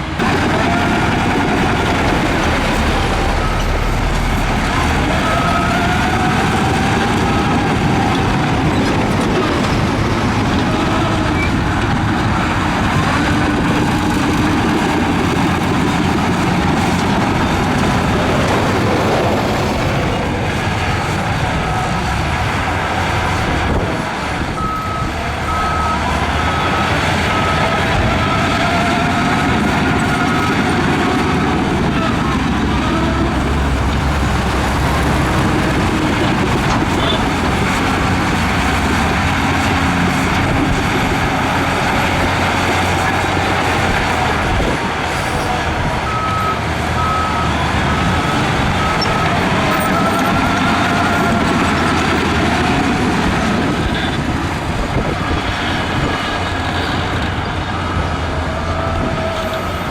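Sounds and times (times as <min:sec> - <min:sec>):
heavy earthmoving machinery running: 0:00.0 - 0:59.9
reversing alarm beeping: 0:24.5 - 0:31.2, 0:34.1 - 0:37.4.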